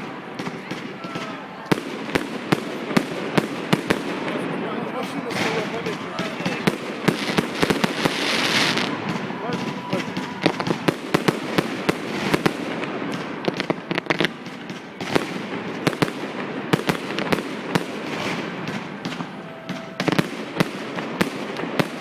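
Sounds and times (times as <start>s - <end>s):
fireworks bangs: 0.0s - 22.0s
fireworks crackle: 0.0s - 22.0s.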